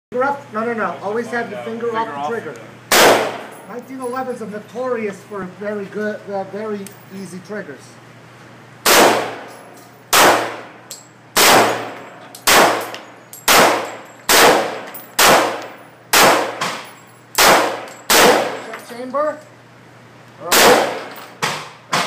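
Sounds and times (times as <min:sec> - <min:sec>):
pistol shots with echo: 0:02.9 - 0:03.5, 0:08.8 - 0:09.5, 0:10.1 - 0:10.8, 0:11.4 - 0:16.8, 0:17.4 - 0:18.6, 0:20.5 - 0:22.0.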